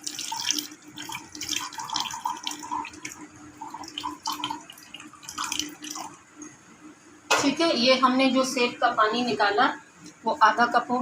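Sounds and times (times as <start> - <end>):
water splashing and gurgling in pot: 0.0 - 6.2.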